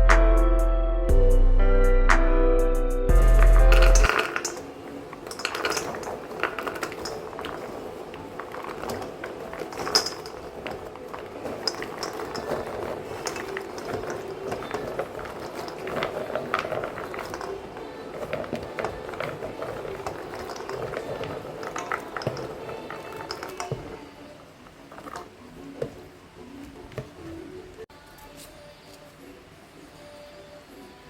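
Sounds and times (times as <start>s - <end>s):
utensil clinking against pan: 3.6s - 24.0s.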